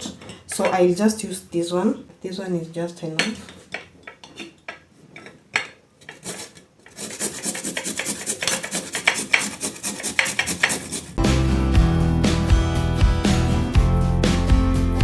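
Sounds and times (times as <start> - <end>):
ginger rasping on a grater: 6.1 - 11.2
background music: 11.2 - 15.0.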